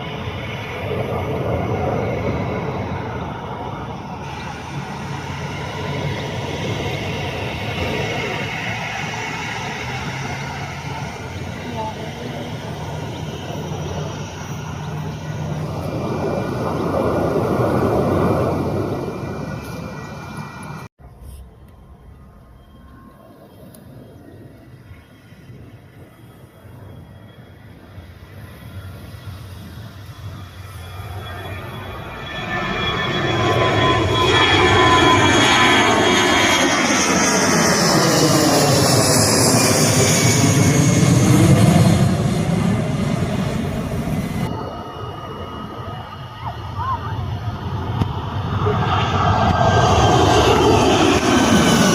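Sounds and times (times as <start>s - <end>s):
jet airliner engines roaring: 0.0s - 51.9s.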